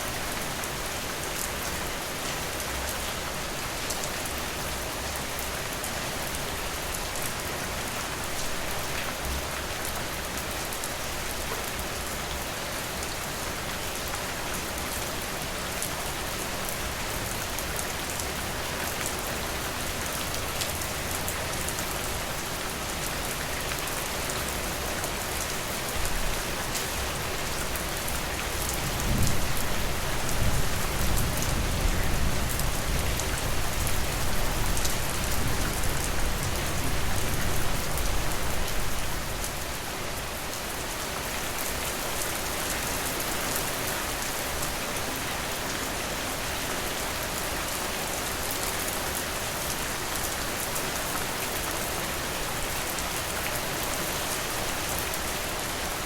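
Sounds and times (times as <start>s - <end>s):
steady rain falling: 0.0s - 56.0s
low rumble of thunder: 28.8s - 38.8s.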